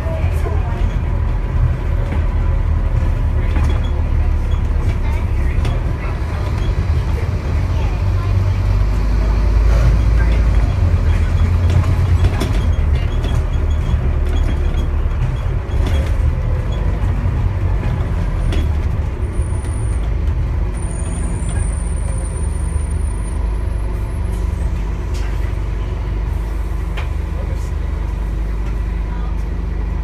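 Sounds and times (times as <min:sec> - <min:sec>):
bus engine droning: 0:00.0 - 0:30.0
knocks and rattles: 0:09.8 - 0:21.1.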